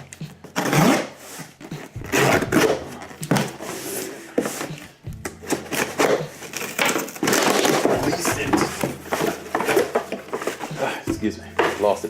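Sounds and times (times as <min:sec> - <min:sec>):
packaging rustling and scraping: 0:00.0 - 0:12.0.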